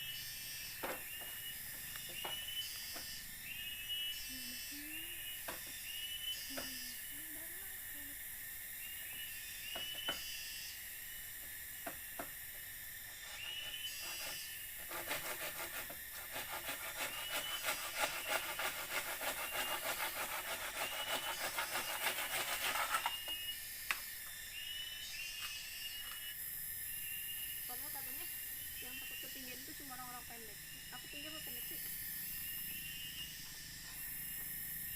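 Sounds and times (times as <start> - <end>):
insects droning and chirping: 0.0 - 34.9
scraping strokes on wood: 13.1 - 23.4.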